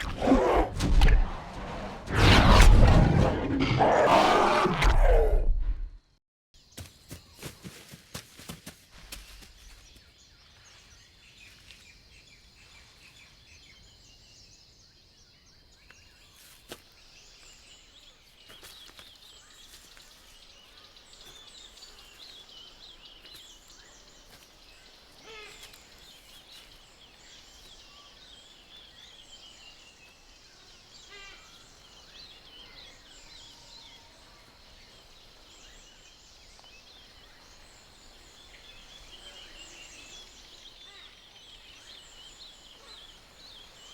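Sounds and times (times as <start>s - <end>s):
birds chirping and trilling: 9.3s - 43.9s.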